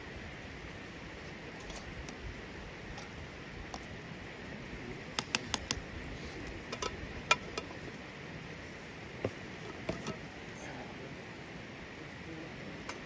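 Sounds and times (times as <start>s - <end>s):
wood fire hissing: 0.0s - 13.0s
fire crackling pops: 5.0s - 8.0s.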